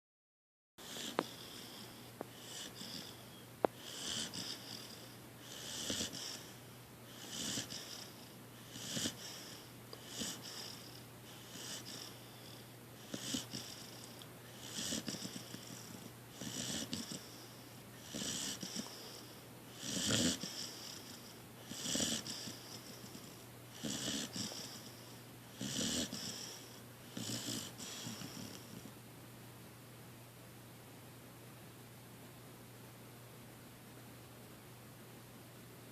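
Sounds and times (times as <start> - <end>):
dog snoring: 0.8 - 28.9.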